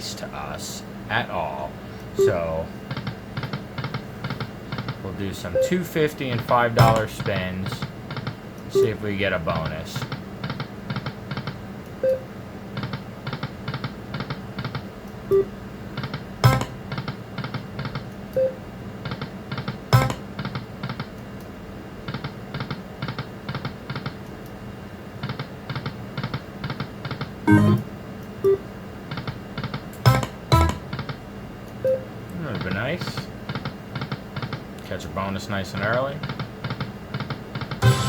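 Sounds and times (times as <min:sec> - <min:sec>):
short electronic tones: 0:02.2 - 0:02.5, 0:08.7 - 0:09.0, 0:27.5 - 0:27.9
slot machine knock: 0:06.8 - 0:07.2, 0:16.4 - 0:16.8, 0:19.9 - 0:20.3, 0:27.5 - 0:27.9, 0:30.0 - 0:30.9, 0:37.8 - 0:38.0.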